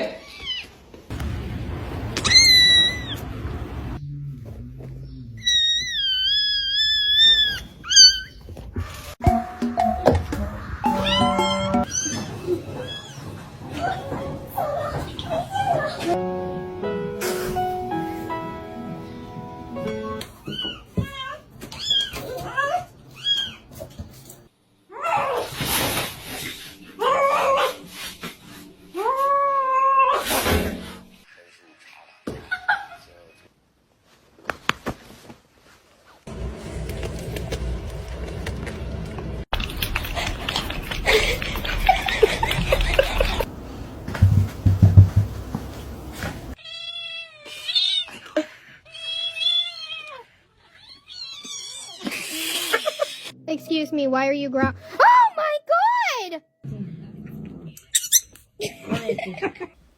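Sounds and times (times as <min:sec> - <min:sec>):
cat meowing: 0:02.2 - 0:03.2
low thumps: 0:43.9 - 0:46.1.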